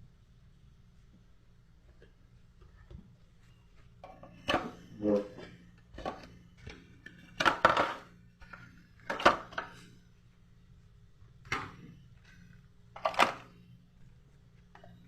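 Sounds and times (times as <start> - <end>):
food containers knocking and clattering: 4.0 - 9.8, 13.0 - 13.5.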